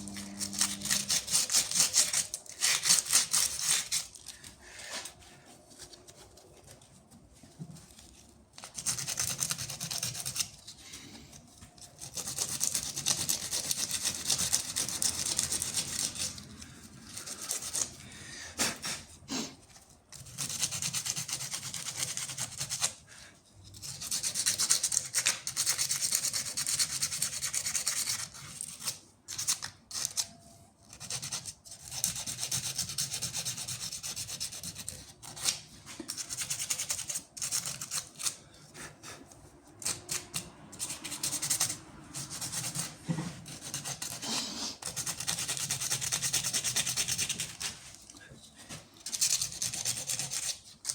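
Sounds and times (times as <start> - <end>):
rubbing against a surface: 18.6 - 50.9.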